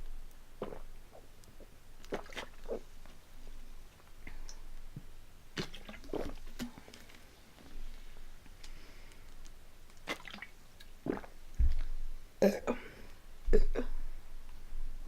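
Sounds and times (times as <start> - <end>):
dull low thumps: 11.6 - 12.2.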